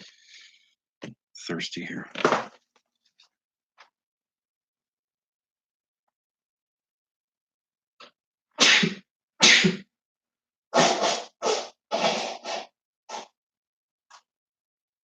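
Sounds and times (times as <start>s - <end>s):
person sneezing or coughing: 8.6s - 9.9s, 10.8s - 12.7s.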